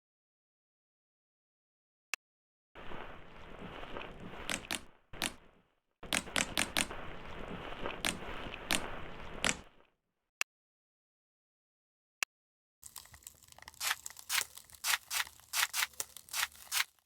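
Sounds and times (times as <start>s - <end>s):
sharp clicking pops: 4.3s - 7.3s, 7.9s - 9.8s
slime crackling when squeezed: 12.8s - 17.0s.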